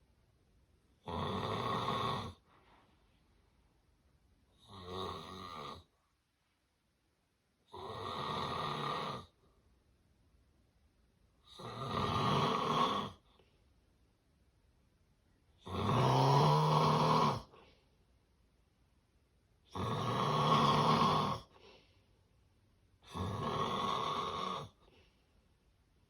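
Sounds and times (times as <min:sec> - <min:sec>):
quiet breaths: 0:00.0 - 0:07.0, 0:07.6 - 0:26.0
person snoring loudly: 0:01.0 - 0:02.4, 0:04.6 - 0:05.9, 0:07.7 - 0:09.3, 0:11.5 - 0:13.2, 0:15.6 - 0:17.5, 0:19.7 - 0:21.5, 0:23.0 - 0:24.8.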